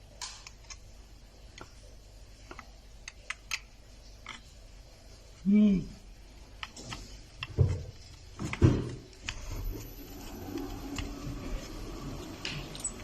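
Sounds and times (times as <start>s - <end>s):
plastic parts clicking: 2.4s - 4.5s
plastic parts knocking: 6.6s - 9.5s.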